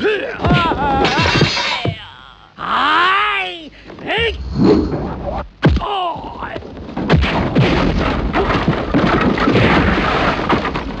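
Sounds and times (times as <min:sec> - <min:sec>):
hits and crashes: 0:00.4 - 0:02.0
low rumble: 0:04.2 - 0:05.6.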